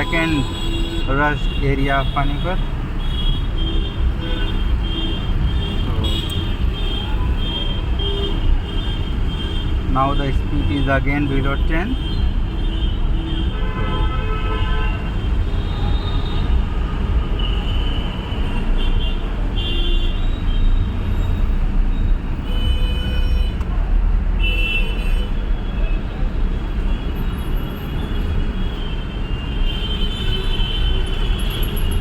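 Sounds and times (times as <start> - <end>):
car horns tooting: 0.0 - 20.2
traffic rumble: 0.0 - 32.0.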